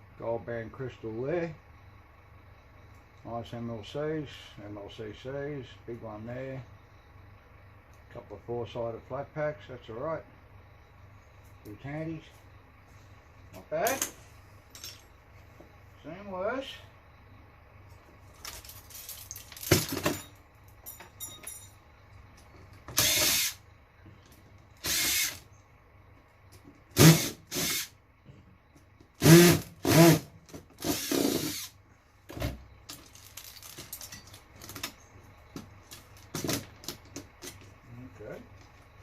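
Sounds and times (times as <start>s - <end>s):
clatter of handled parts: 13.8s - 15.1s, 18.3s - 21.8s, 32.8s - 37.8s
power drill running: 23.0s - 23.6s, 24.8s - 25.4s, 27.0s - 27.9s, 29.2s - 30.2s, 30.8s - 31.8s.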